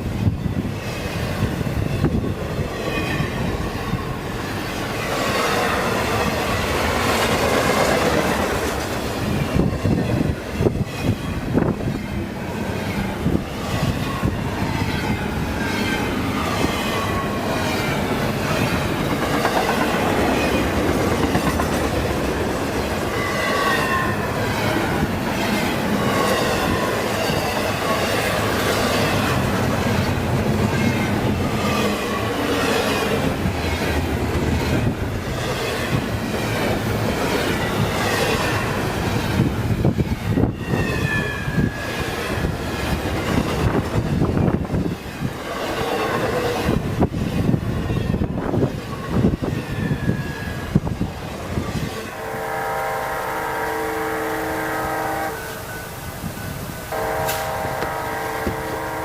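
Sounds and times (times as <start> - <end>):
train wheels clicking over rail joints: 15.0 - 23.4.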